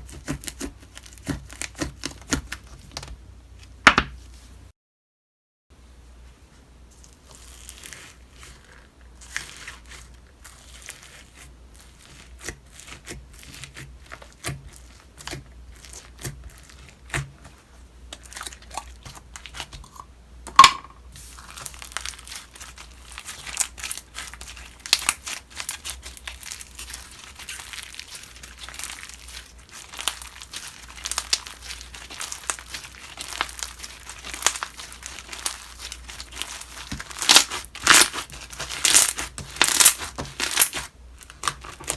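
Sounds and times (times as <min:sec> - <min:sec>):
slime crackling and popping: 0:21.2 - 0:41.9.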